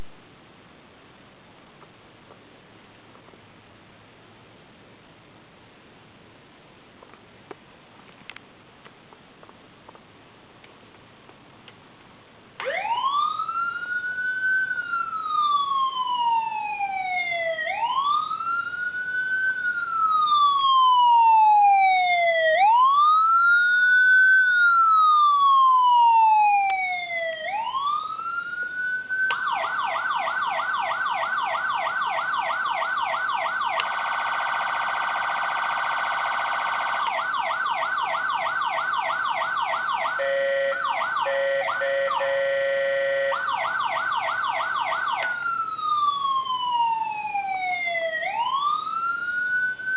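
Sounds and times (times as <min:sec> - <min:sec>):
electronic siren wailing and yelping: 0:12.6 - 0:49.9.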